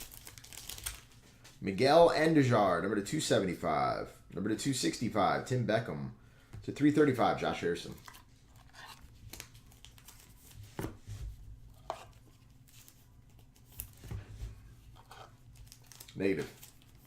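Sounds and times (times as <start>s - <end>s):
faint steady hum: 0.0s - 17.0s
trading cards being handled: 7.8s - 17.0s.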